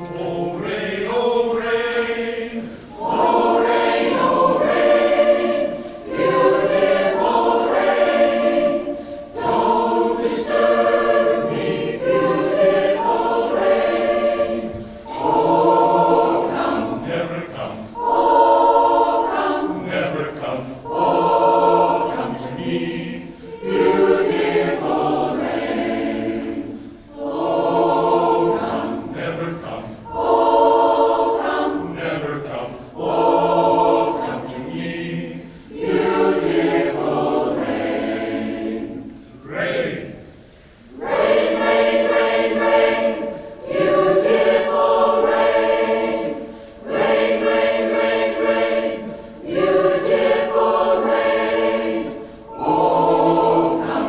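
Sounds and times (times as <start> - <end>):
choir singing: 0.0 - 54.0
singers breathing: 35.4 - 35.7, 40.3 - 40.9, 46.4 - 46.8, 52.2 - 52.5.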